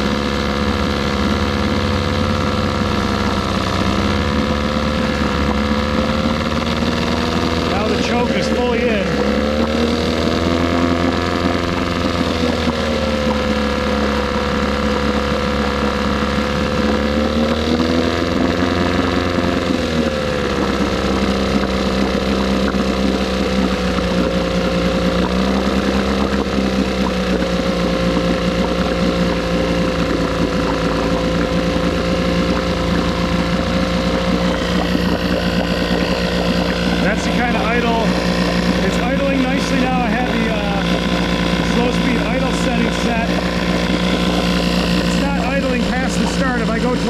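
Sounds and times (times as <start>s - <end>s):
outboard motor running: 0.0s - 47.0s.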